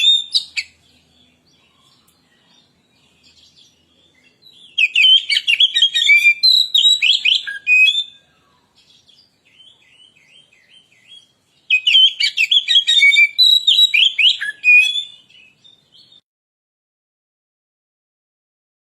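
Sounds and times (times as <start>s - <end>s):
bird singing rapid high notes: 0.0s - 1.5s, 3.0s - 16.2s.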